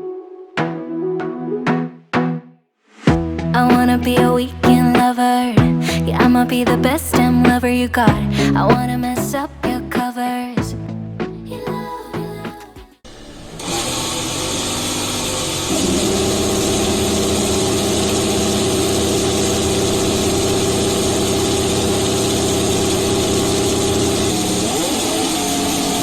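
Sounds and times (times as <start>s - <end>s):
race car engine idling and revving: 13.1s - 26.0s.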